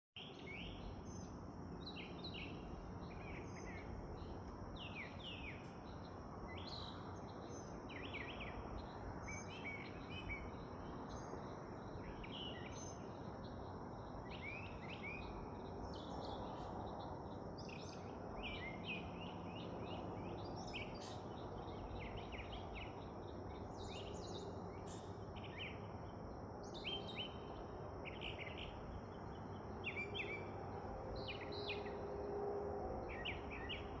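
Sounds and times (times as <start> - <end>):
steady background hiss: 0.2 - 34.0.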